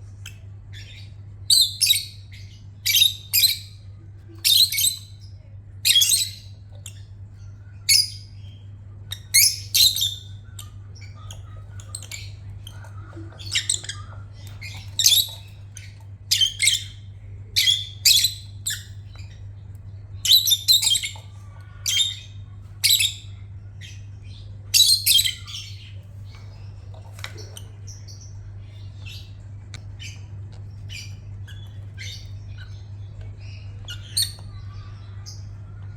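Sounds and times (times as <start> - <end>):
steady low hum: 0.0 - 35.9
bird chirps: 7.7 - 19.6, 20.2 - 35.9.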